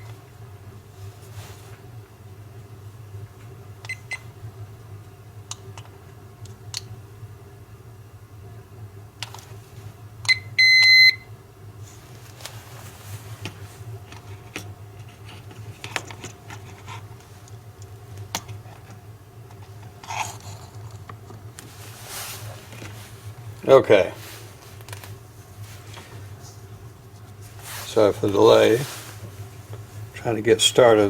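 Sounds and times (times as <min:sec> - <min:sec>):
clicks and handling noises: 0:13.4 - 0:21.8.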